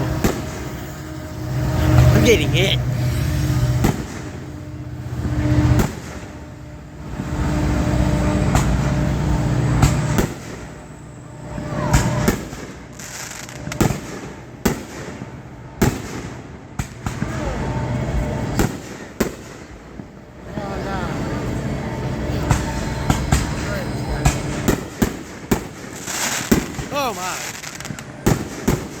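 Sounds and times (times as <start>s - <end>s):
fireworks bursting: 0.0s - 29.0s
vehicle engine rumble: 0.0s - 29.0s.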